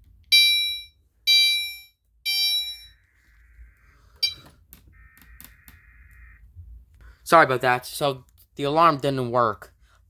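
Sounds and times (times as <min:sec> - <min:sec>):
fire alarm chime tones: 0:00.3 - 0:03.1, 0:04.2 - 0:04.5
faint steady beep: 0:00.3 - 0:04.5
sharp clicks: 0:04.2 - 0:05.8.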